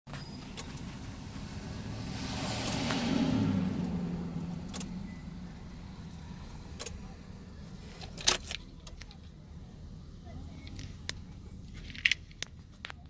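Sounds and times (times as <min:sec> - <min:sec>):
vehicle passing: 0:00.3 - 0:11.8
keys jingling: 0:10.6 - 0:12.8.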